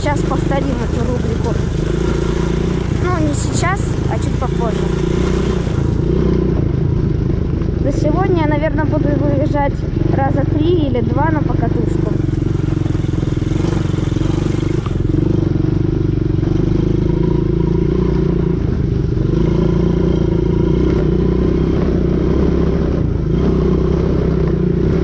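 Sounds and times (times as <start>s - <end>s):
quad bike engine running: 0.0s - 25.0s.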